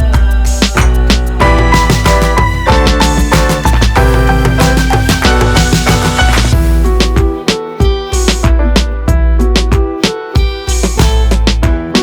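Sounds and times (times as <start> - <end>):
background music with drums and bass: 0.0 - 12.0.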